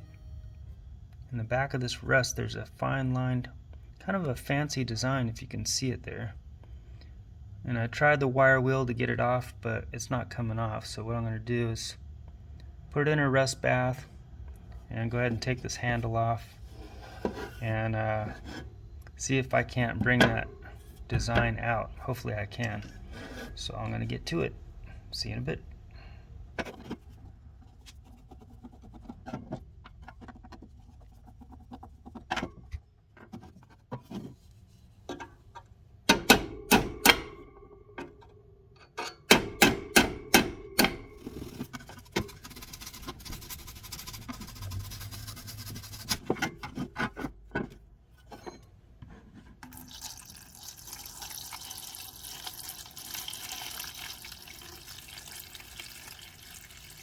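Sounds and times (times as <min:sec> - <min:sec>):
sharp handling clicks and knocks: 0:26.6 - 0:43.3
liquid pouring into a container: 0:49.6 - 0:57.0.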